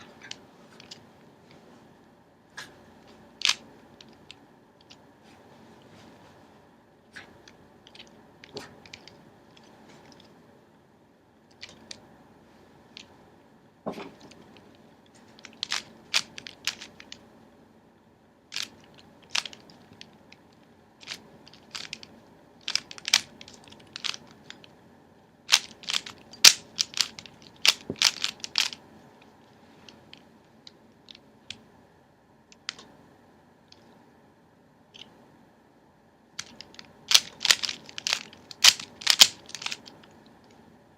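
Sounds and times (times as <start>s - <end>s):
plastic puzzle cube clicking: 3.4s - 5.0s, 15.4s - 17.2s, 18.5s - 20.1s, 21.0s - 24.6s, 25.5s - 28.8s, 36.4s - 40.0s.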